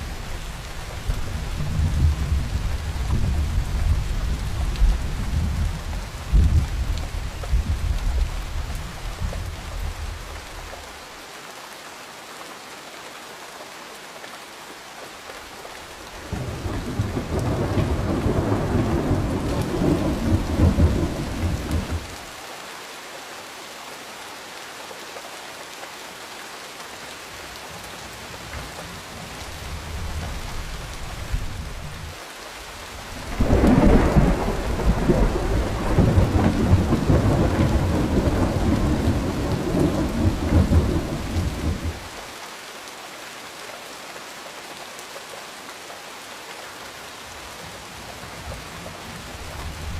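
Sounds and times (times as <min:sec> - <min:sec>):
steady rain falling: 0:00.0 - 0:49.9
thunder rolling: 0:16.3 - 0:22.1, 0:33.3 - 0:42.0.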